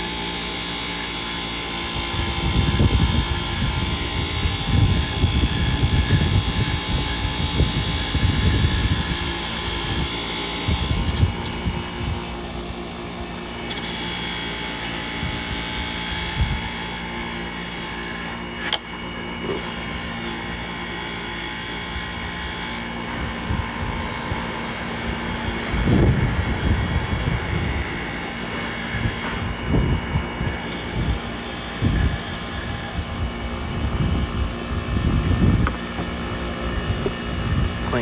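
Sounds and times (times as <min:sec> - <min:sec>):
bench grinder running: 0:00.0 - 0:38.0
wind buffeting microphone: 0:01.8 - 0:13.4, 0:15.1 - 0:17.0, 0:21.9 - 0:38.0.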